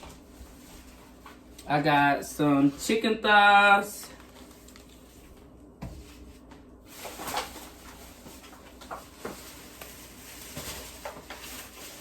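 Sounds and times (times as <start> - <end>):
packaging rustling and scraping: 4.1 - 12.0.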